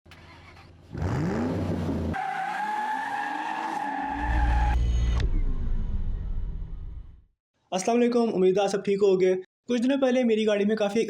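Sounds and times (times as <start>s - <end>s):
car engine revving: 0.9s - 2.2s
high-pitched squeal: 2.2s - 6.7s.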